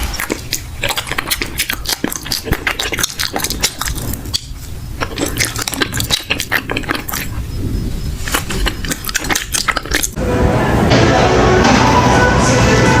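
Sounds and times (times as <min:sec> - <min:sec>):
crunching and chewing fried batter: 0:00.0 - 0:07.4, 0:08.2 - 0:10.2
music: 0:10.2 - 0:13.0.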